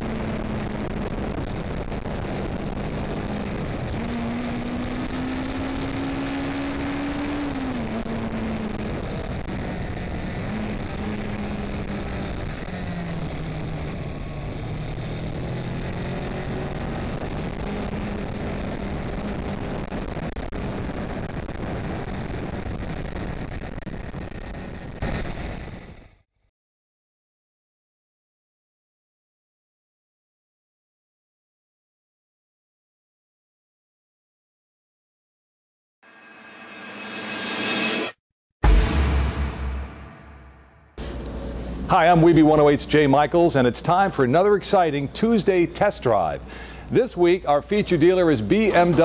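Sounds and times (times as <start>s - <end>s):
road and wind noise: 0.0s - 26.1s.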